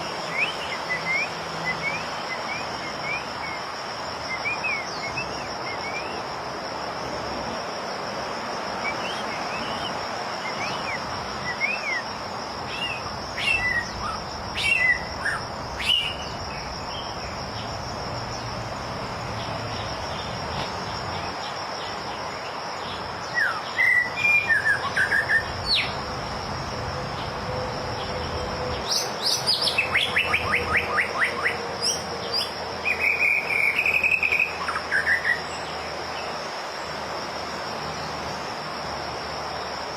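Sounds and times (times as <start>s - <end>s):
high-pitched insect drone: 0.0s - 39.9s
bird singing whistled phrases: 0.3s - 3.6s, 10.5s - 12.0s, 23.4s - 25.9s, 32.4s - 35.4s.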